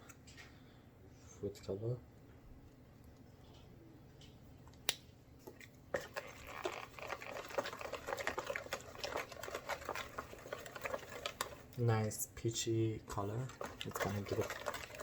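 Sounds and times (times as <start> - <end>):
batter stirred in a bowl: 5.3 - 15.0.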